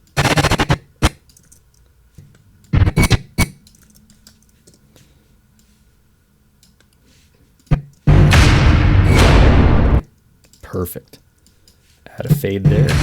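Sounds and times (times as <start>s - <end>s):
short loud bursts: 0.2s - 0.9s.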